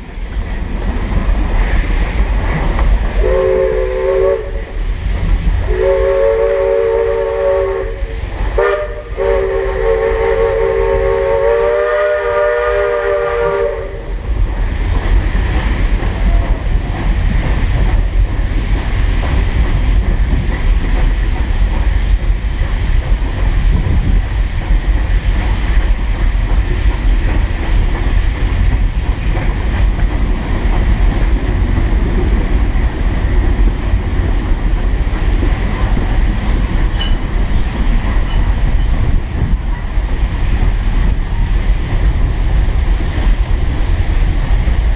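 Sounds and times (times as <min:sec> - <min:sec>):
train rumbling and clattering on track: 0:00.0 - 0:44.9
steam locomotive whistle: 0:03.2 - 0:04.8, 0:05.6 - 0:14.2.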